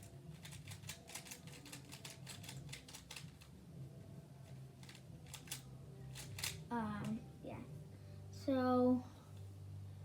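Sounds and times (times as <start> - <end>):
plastic puzzle cube clicking: 0.3 - 3.5, 4.8 - 6.6.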